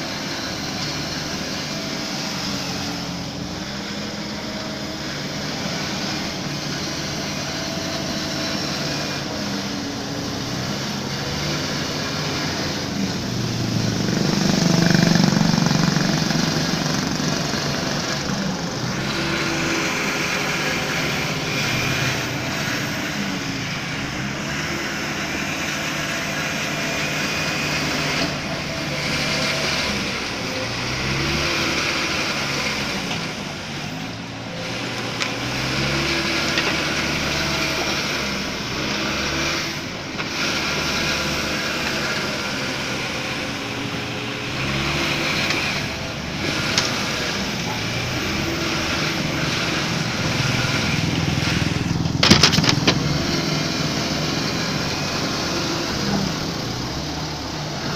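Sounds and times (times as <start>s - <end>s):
diesel engine revving: 0.0s - 57.9s.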